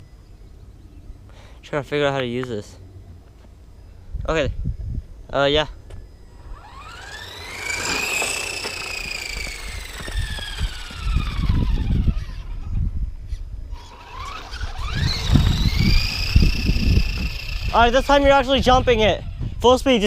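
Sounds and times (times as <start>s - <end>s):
electric toy car motor whining: 5.9s - 19.0s.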